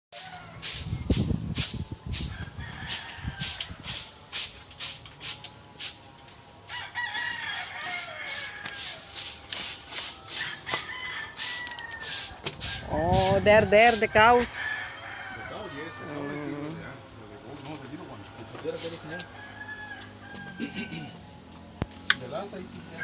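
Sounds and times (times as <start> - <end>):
rooster crowing: 0.1 - 0.8, 2.2 - 4.2, 6.7 - 16.8, 18.8 - 21.4
rhythmic swishing: 0.2 - 6.1, 6.7 - 14.6, 18.6 - 19.3.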